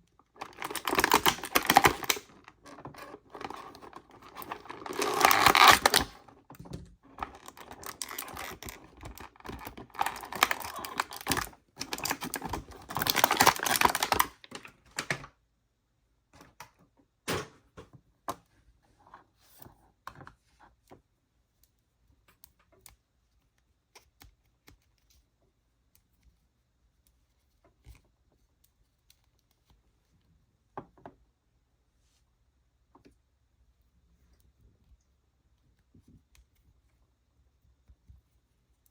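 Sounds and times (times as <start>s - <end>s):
packaging crackling rustle: 0.3s - 6.4s, 7.2s - 15.3s
plastic pieces clicking: 0.4s - 6.3s, 7.2s - 15.2s.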